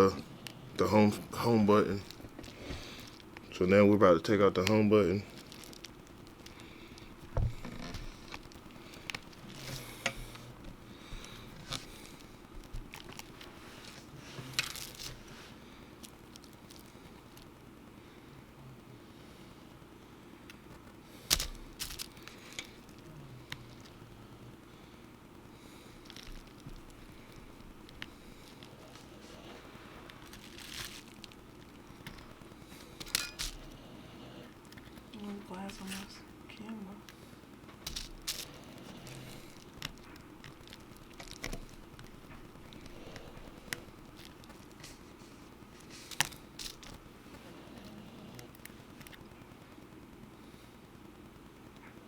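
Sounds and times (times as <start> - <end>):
steady low hum: 0.0 - 52.0
small tools clicking and scraping: 27.9 - 33.8, 37.8 - 41.8.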